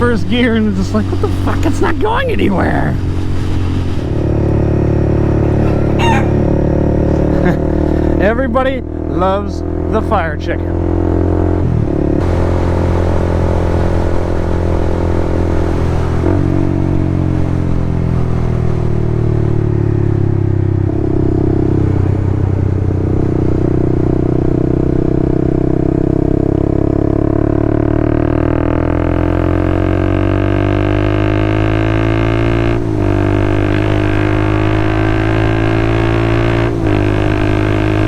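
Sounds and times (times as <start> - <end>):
motorcycle engine running: 0.0 - 38.0.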